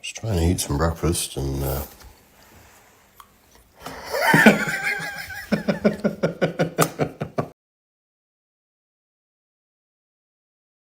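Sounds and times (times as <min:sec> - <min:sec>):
person laughing: 0:03.9 - 0:07.5.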